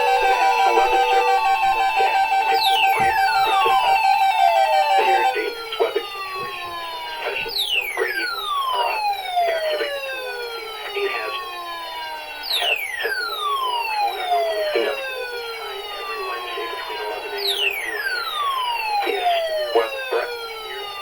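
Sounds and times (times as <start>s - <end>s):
electronic siren tone gliding down: 0.0s - 5.7s.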